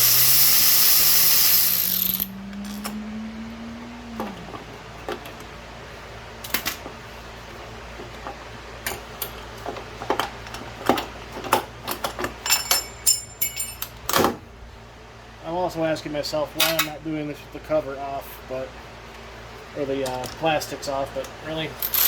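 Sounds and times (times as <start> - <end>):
power tool spinning down: 0.0 - 4.6.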